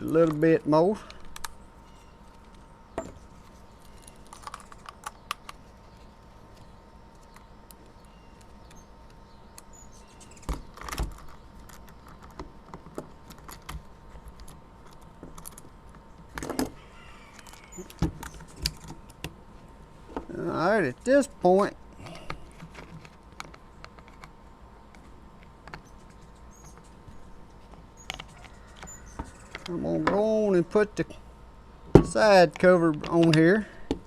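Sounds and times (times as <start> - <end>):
small metal parts clicking: 3.8 - 5.6.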